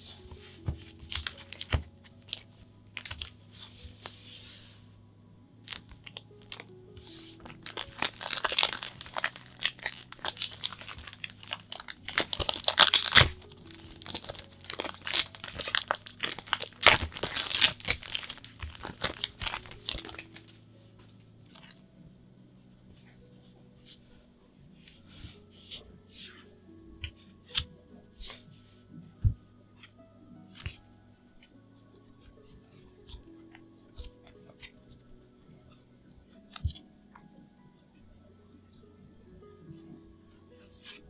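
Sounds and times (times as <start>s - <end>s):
packaging rustling and clicking: 0.0s - 4.2s, 5.7s - 20.5s
plastic wrapping crinkling: 0.0s - 4.8s, 5.6s - 20.6s.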